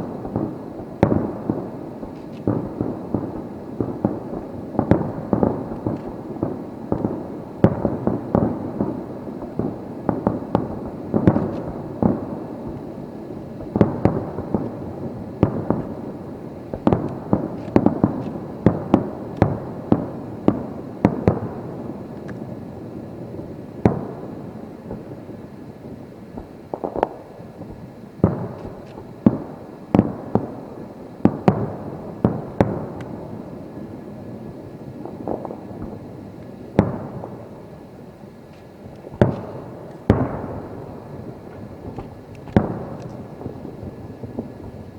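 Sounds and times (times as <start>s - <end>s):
firework shells bursting: 0.0s - 22.5s, 34.9s - 44.9s.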